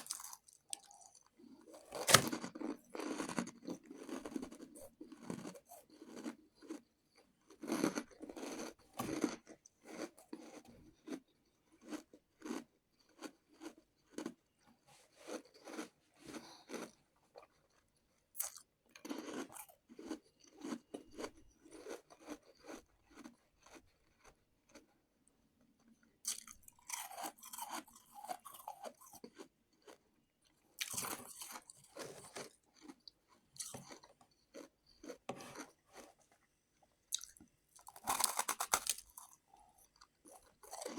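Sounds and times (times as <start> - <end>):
person crunching ice: 1.8 - 4.2, 37.2 - 39.4.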